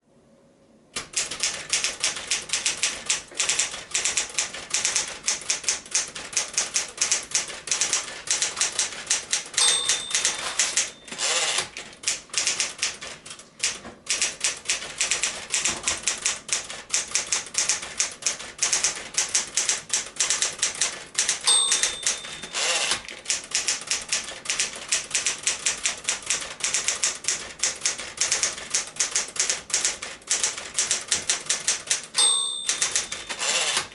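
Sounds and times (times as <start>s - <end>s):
manual typewriter typing: 1.0s - 33.9s
typewriter carriage return whirring: 1.0s - 33.9s
typewriter bell ding: 7.9s - 11.7s, 21.2s - 23.1s, 32.1s - 33.9s.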